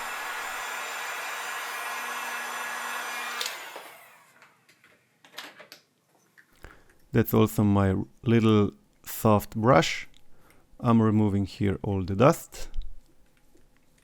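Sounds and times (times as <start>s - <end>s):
heat gun blowing: 0.0s - 4.4s.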